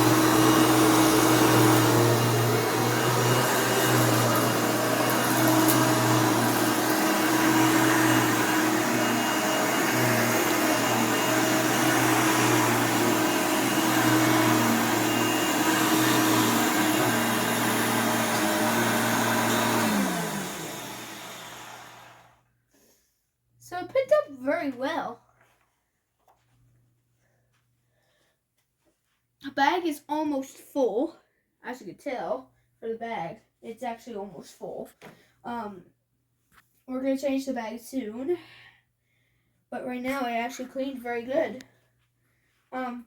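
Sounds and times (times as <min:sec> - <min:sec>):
upright vacuum cleaner running: 0:00.0 - 0:22.4
vacuum motor winding down: 0:00.0 - 0:22.4.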